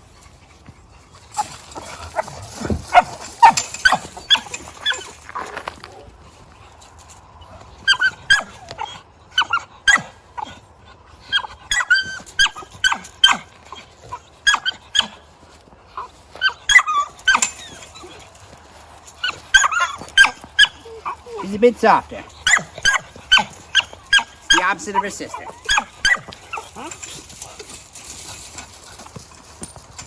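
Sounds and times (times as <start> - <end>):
puppy barking and yipping: 1.4 - 5.5, 7.8 - 10.5, 11.3 - 15.2, 16.0 - 18.3, 19.2 - 29.0.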